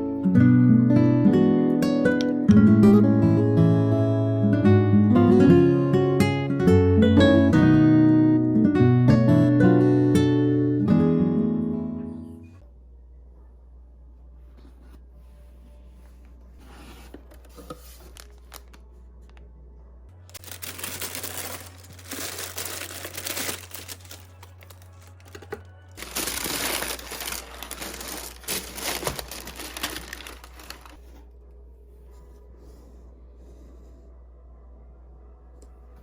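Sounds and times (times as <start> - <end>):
packaging crinkling and rustling: 17.0 - 19.4, 20.3 - 31.0.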